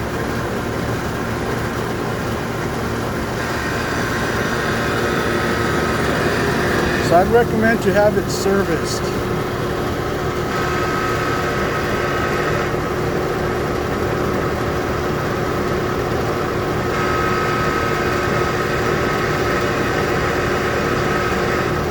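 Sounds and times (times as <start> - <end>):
air conditioner grinding: 0.0 - 21.9
high whine: 3.1 - 13.6, 16.9 - 21.9.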